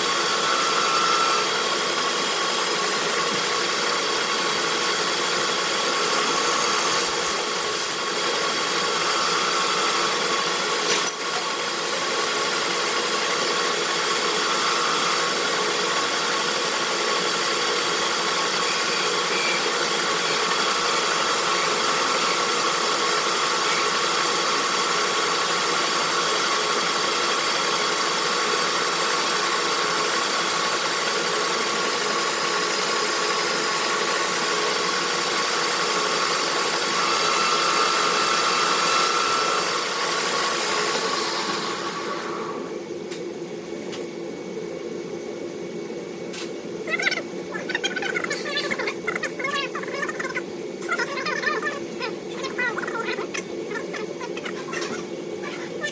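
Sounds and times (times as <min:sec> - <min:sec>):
machine tool machining metal: 0:00.0 - 0:42.4.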